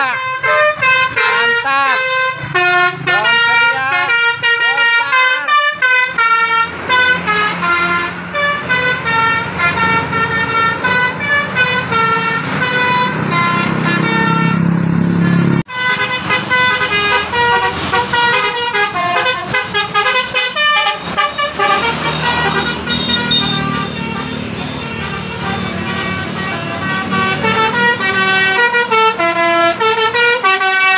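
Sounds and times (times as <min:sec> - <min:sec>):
bus engine rumble: 0:00.0 - 0:30.9
musical bus horn melody: 0:00.0 - 0:30.9.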